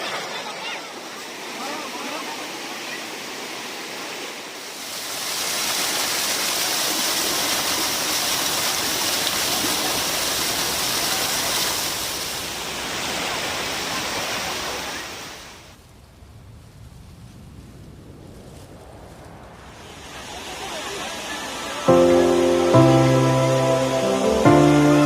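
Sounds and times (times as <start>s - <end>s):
waterfall rushing: 0.0s - 15.7s, 19.6s - 25.0s.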